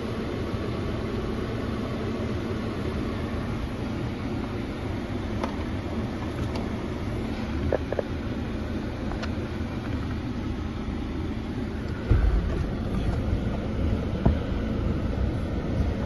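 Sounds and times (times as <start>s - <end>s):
car engine rumbling: 0.0s - 16.0s
dull thump: 12.0s - 14.5s.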